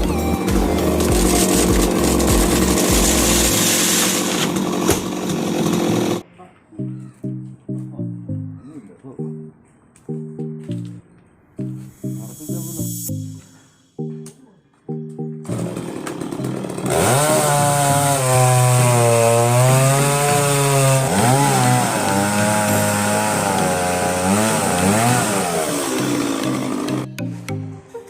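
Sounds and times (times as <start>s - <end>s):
chainsaw cutting wood: 0.2s - 6.2s, 15.4s - 27.1s.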